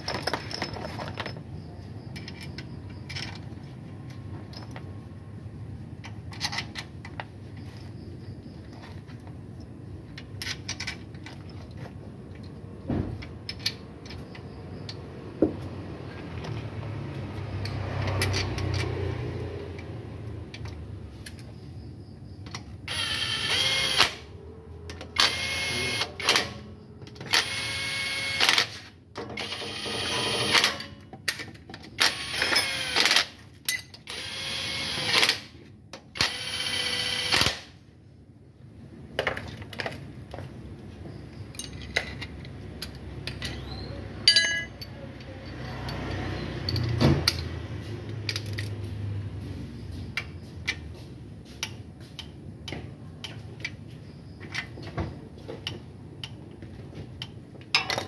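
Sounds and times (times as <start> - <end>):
clicks and handling of metal parts: 0.0 - 5.2, 6.0 - 8.0, 8.6 - 21.6, 24.8 - 27.7, 28.4 - 34.2, 39.1 - 58.0
power tool motor whine: 22.9 - 24.3, 25.2 - 26.6, 27.2 - 28.8, 29.4 - 30.7, 34.1 - 35.4, 36.2 - 37.6.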